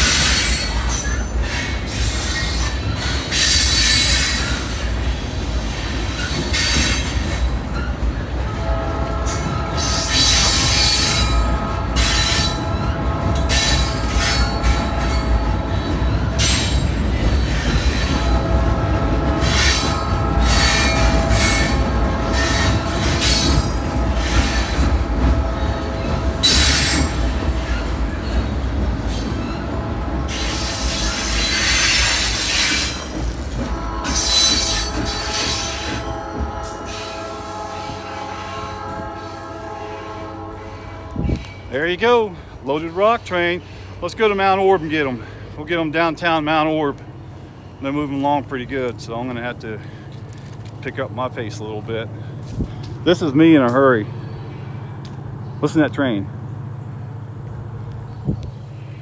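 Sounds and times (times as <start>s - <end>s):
high-pitched wheel squeal: 0.0s - 4.7s, 26.4s - 27.9s, 34.0s - 36.1s
freight train rumbling past: 0.0s - 59.0s.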